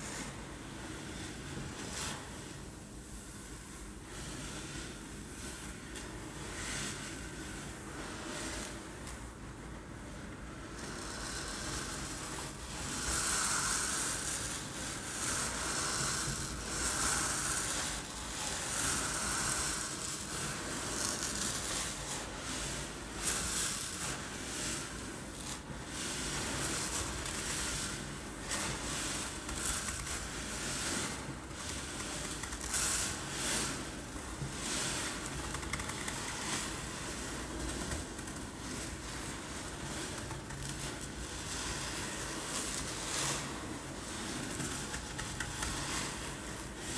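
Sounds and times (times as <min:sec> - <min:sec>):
rice rattling in a container: 0:10.8 - 0:46.9.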